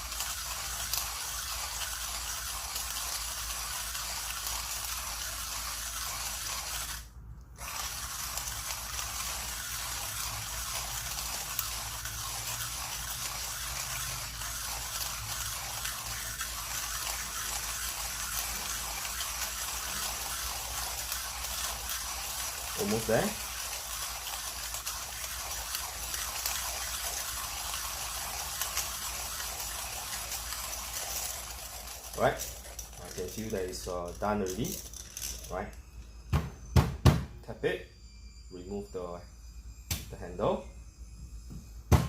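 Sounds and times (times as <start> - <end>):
hand grinder crushing coffee beans: 0.0 - 35.7.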